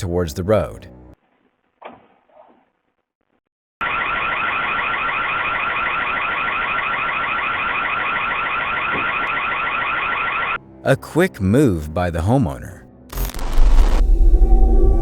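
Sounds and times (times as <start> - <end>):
warbling alarm siren: 3.8 - 10.6, 13.9 - 15.0.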